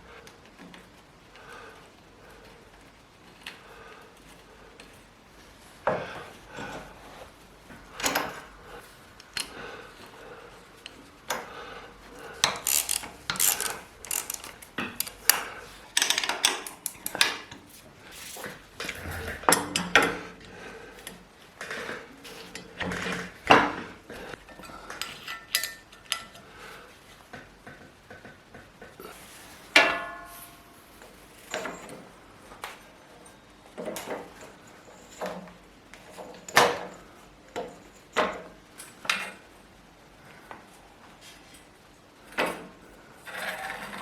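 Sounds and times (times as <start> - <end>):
metal tools clinking and clattering: 12.2 - 17.6, 29.8 - 32.2.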